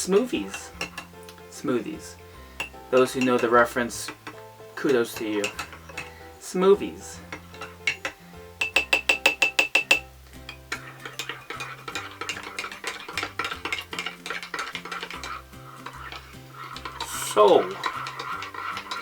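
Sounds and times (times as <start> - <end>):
light music with bass line: 0.0 - 19.0
spoon scraping and stirring: 0.0 - 19.0
metal spoon clinking against cup: 0.5 - 1.1, 4.2 - 6.1, 7.3 - 19.0.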